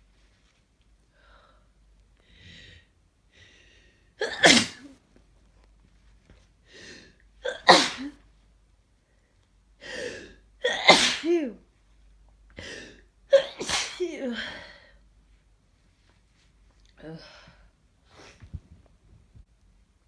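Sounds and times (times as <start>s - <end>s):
person sneezing: 4.2s - 5.0s, 7.4s - 8.2s, 10.0s - 11.4s, 12.6s - 14.5s.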